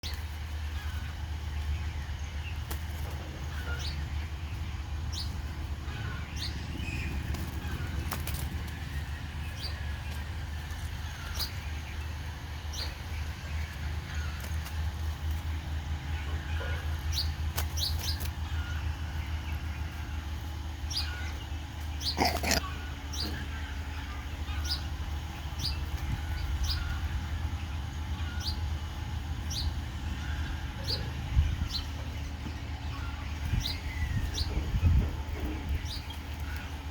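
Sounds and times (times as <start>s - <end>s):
steady low hum: 0.0s - 36.9s
small bird calling: 16.4s - 25.0s.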